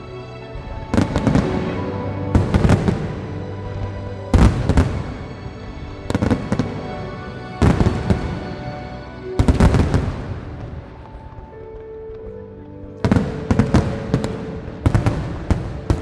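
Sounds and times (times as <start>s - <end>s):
music playing: 0.0s - 16.0s
fireworks bangs and crackles: 0.6s - 11.5s, 13.0s - 16.0s.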